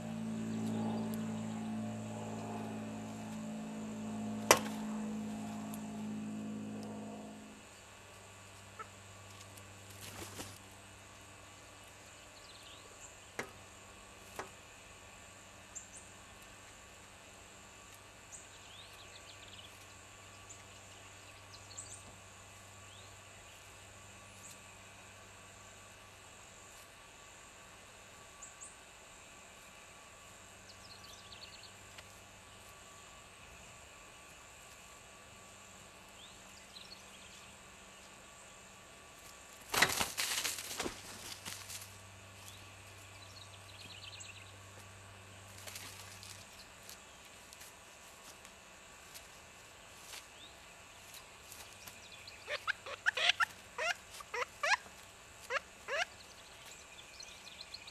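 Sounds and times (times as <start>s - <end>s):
low hum: 0.0s - 26.6s
faint high bird chirps: 51.9s - 54.9s, 55.5s - 57.9s.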